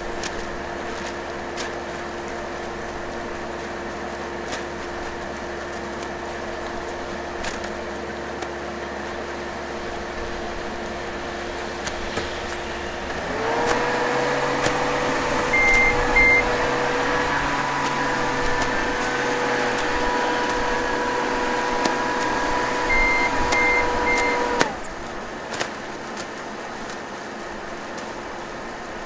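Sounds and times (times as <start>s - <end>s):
heavy machinery whine: 10.4s - 25.1s
short high electronic beeps: 15.5s - 16.6s, 22.8s - 24.6s.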